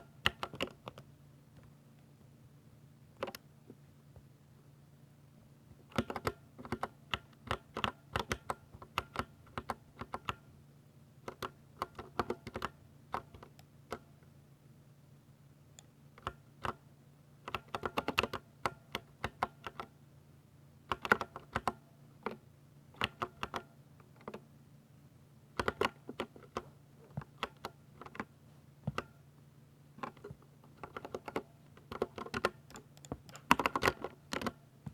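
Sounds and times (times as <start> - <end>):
mechanical keyboard keystrokes clacking: 5.9 - 10.4, 30.0 - 34.6.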